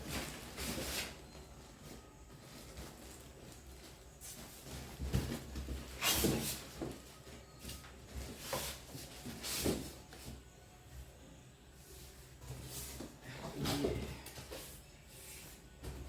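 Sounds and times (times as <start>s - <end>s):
packaging rustles and bumps: 0.0s - 10.5s.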